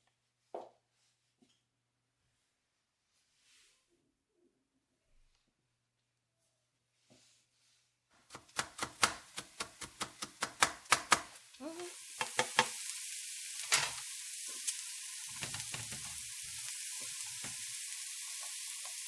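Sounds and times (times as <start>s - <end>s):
food sizzling in hot oil: 8.2s - 19.0s.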